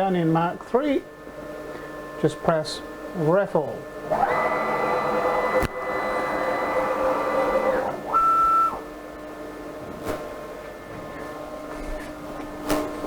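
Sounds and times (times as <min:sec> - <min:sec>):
stepper motors whining: 0:04.0 - 0:08.8.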